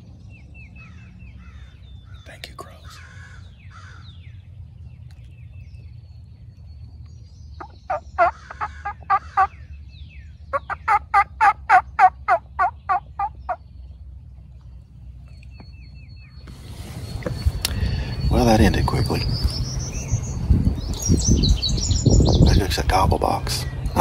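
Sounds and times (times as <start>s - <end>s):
turkey gobbling: 7.6s - 9.6s, 10.5s - 13.6s.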